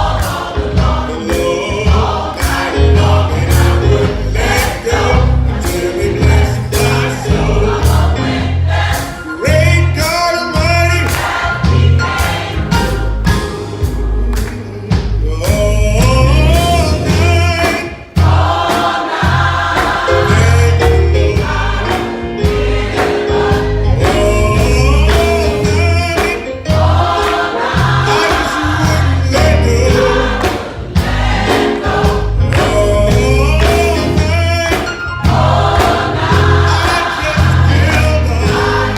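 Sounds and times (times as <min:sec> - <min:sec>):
choir singing gospel song: 0:00.0 - 0:38.9
instrumental accompaniment with bass: 0:00.0 - 0:38.9.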